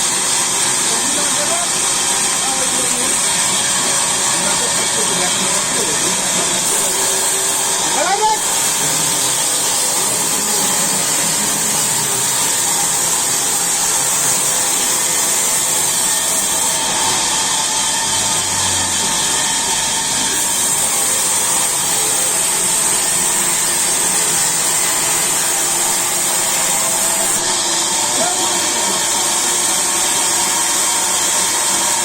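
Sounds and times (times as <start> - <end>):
sawmill saw cutting wood: 0.0 - 32.0.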